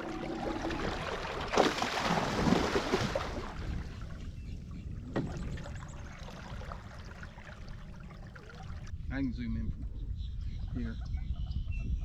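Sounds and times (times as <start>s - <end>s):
water splashing around kayak: 0.0s - 8.9s.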